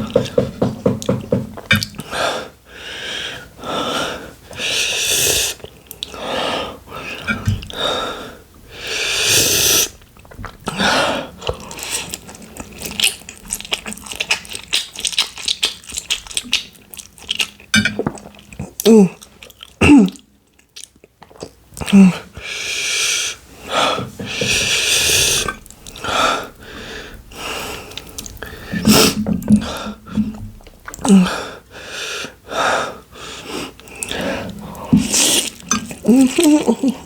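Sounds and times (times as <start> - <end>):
rapid chewing: 11.4 - 19.8
person breathing hard wheezing: 21.9 - 30.4, 31.0 - 35.5.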